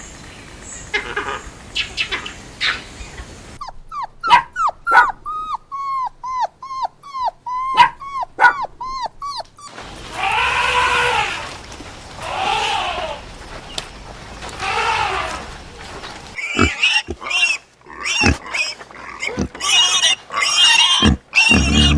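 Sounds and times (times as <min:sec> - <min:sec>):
dog whimpering: 0:03.6 - 0:11.6
dog yips: 0:03.6 - 0:11.6
hoarse animal call: 0:09.7 - 0:21.9.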